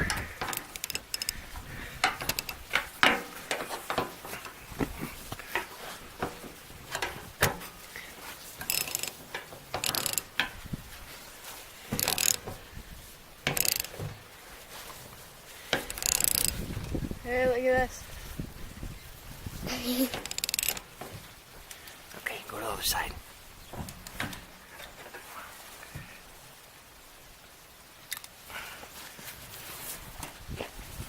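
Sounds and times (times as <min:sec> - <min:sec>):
ratchet wrench clicking: 0:00.5 - 0:01.3, 0:08.7 - 0:09.1, 0:09.8 - 0:10.3, 0:12.0 - 0:12.4, 0:13.5 - 0:13.9, 0:15.9 - 0:16.6, 0:20.2 - 0:20.8.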